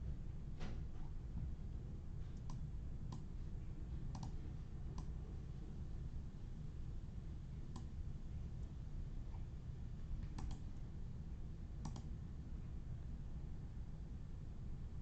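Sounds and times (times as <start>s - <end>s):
low steady hum: 0.0s - 15.0s
faint sharp clicks: 4.1s - 4.4s, 7.7s - 7.9s, 10.2s - 10.6s, 11.8s - 12.1s.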